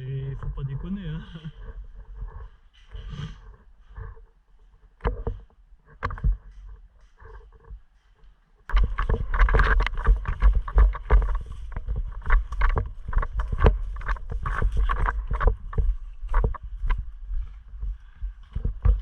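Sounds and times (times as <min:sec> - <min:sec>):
wind rumbling on microphone: 0:00.0 - 0:07.9, 0:08.6 - 0:19.0
camera handling knocks and rattles: 0:08.7 - 0:17.1.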